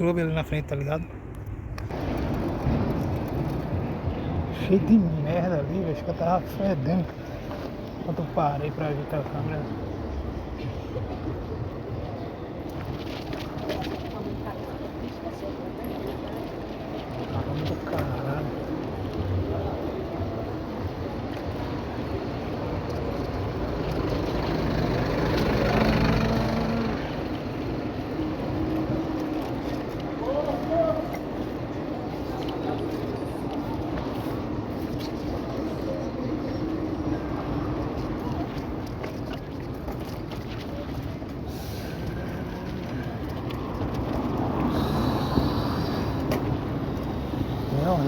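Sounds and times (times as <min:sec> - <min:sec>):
low traffic rumble: 0:00.0 - 0:48.0
street and wind noise: 0:00.0 - 0:48.0
vehicle engine passing by: 0:23.8 - 0:27.5.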